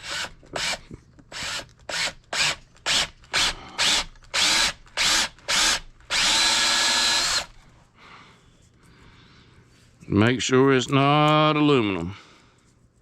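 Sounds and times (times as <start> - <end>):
handheld power tool running: 0.0 - 7.6.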